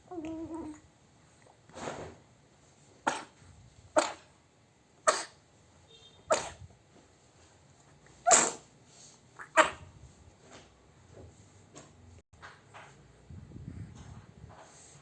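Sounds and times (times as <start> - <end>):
pet coughing: 3.0 - 3.4, 4.0 - 4.3, 5.0 - 5.4, 6.2 - 6.6, 9.4 - 9.9.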